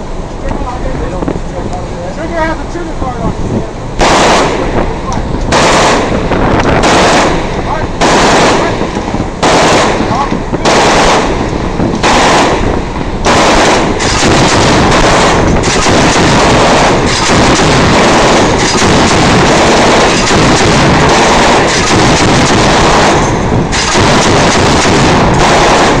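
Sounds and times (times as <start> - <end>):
chain gun firing bursts: 4.0 - 4.7, 5.5 - 6.2, 6.8 - 8.8, 9.4 - 11.4, 12.0 - 26.0.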